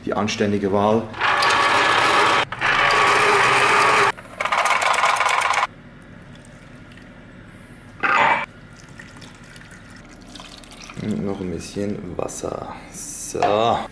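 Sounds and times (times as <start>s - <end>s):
blender motor running: 1.2s - 4.2s.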